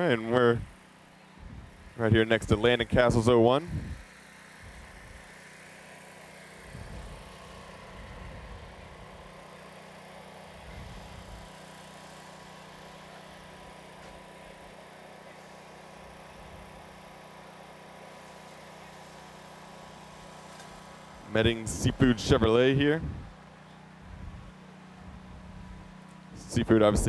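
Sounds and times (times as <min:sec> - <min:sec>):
low mechanical hum: 0:00.0 - 0:27.0
short low rumbles: 0:22.3 - 0:23.3, 0:24.0 - 0:27.0.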